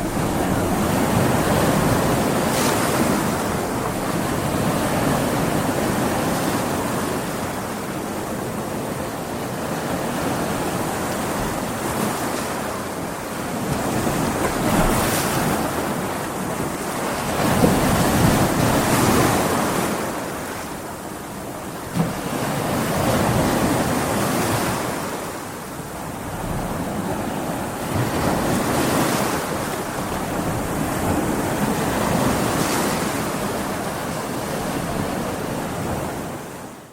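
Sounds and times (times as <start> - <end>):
ocean waves breaking on beach: 0.0 - 36.9
wind: 0.0 - 36.9.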